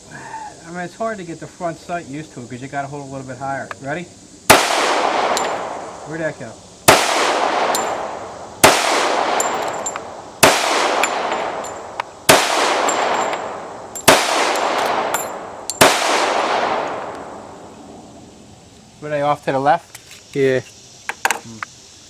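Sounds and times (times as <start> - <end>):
pistol shots echoing: 4.5 - 6.0, 6.9 - 17.4.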